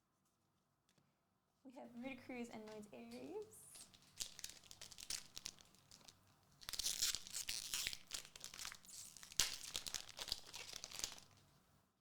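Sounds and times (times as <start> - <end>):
foil wrapper crinkling: 2.7 - 11.7
foil pack ripping: 3.8 - 11.5.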